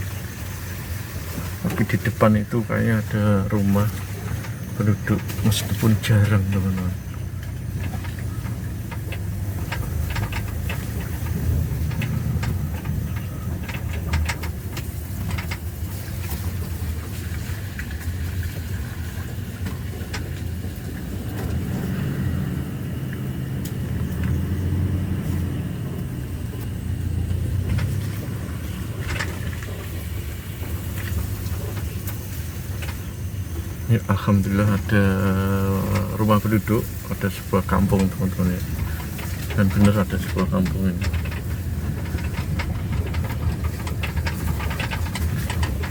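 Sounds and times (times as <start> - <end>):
vehicle engine running: 0.0 - 45.9
knocks and rattles: 1.2 - 45.9.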